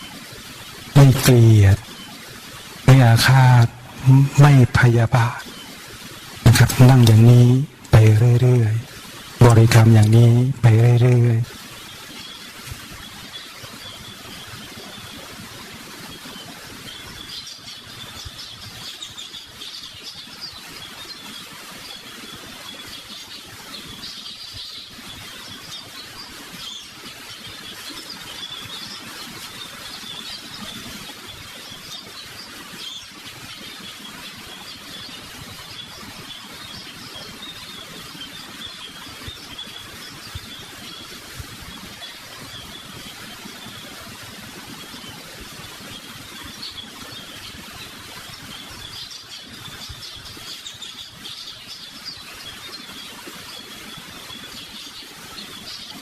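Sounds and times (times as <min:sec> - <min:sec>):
high chirping: 0:01.0 - 0:02.1, 0:02.9 - 0:05.8, 0:06.5 - 0:11.5.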